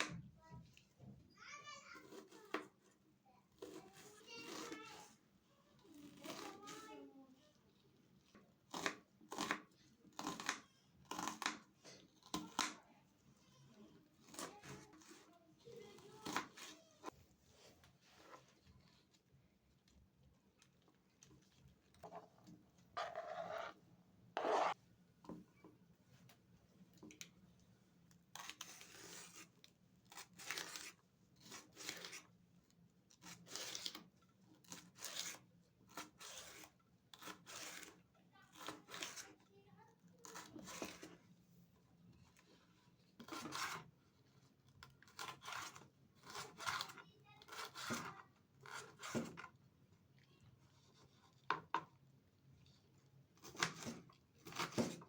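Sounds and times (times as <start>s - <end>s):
rasping scraping food preparation: 2.0s - 2.8s, 3.5s - 5.2s, 5.8s - 7.5s, 8.1s - 19.0s, 21.4s - 23.8s, 24.4s - 24.8s, 28.3s - 32.4s, 33.1s - 39.5s, 40.2s - 41.4s, 42.1s - 49.6s.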